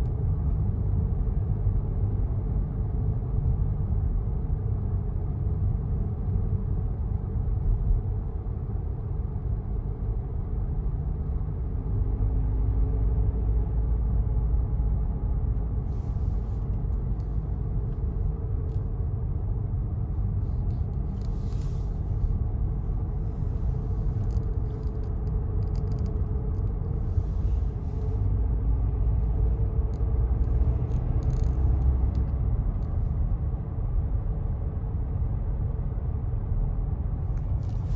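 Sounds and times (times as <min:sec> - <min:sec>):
diesel engine rumbling: 0:15.7 - 0:33.8.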